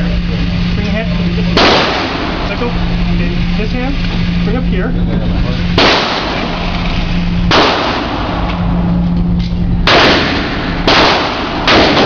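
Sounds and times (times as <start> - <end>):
steady low hum: 0.0 - 12.0
handgun shots echoing: 5.8 - 6.5, 7.5 - 8.6, 9.9 - 12.0.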